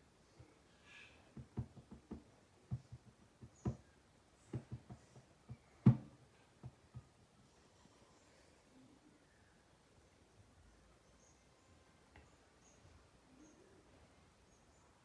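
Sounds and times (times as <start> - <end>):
hard objects knocking: 1.4 - 7.1.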